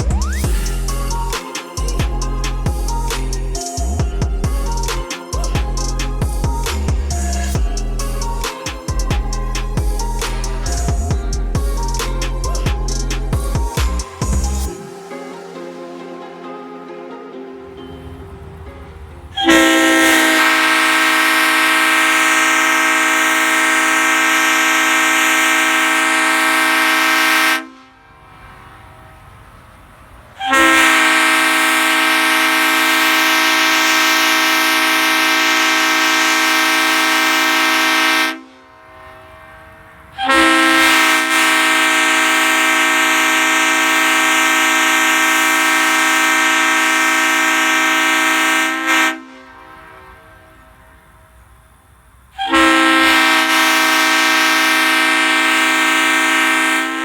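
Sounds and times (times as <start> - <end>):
locomotive air horn chord: 19.4 - 28.2, 30.4 - 39.3, 40.1 - 51.5, 52.4 - 57.0.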